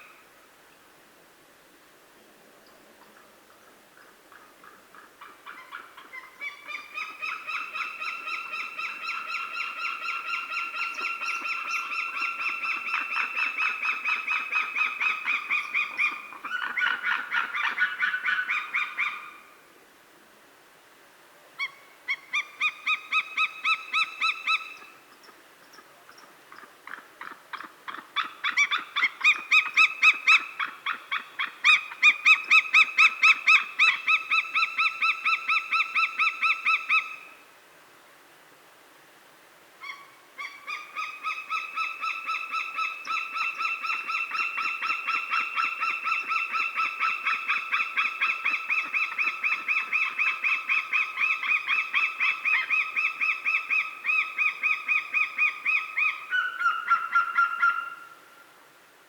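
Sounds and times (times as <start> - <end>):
faint creek running: 0.0 - 59.0
eagles calling: 4.0 - 19.5, 39.8 - 58.2.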